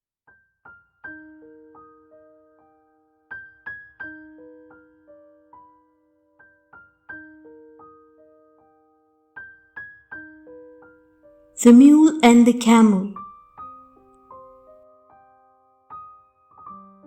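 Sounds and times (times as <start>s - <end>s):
soft piano music: 0.7s - 10.9s.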